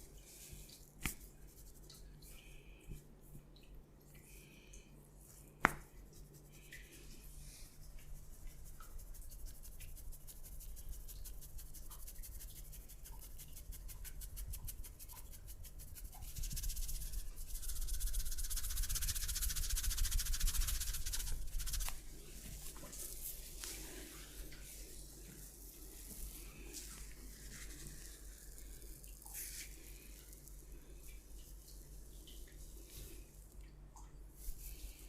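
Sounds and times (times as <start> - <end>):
hands rubbing skin and hair: 0.3 - 2.0, 5.6 - 30.5.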